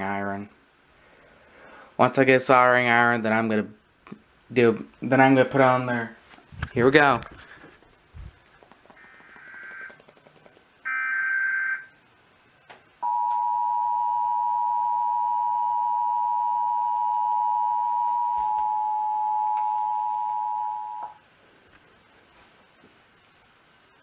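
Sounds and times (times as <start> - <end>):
warbling data tones: 9.0 - 10.2
two-tone attention signal: 13.0 - 21.2.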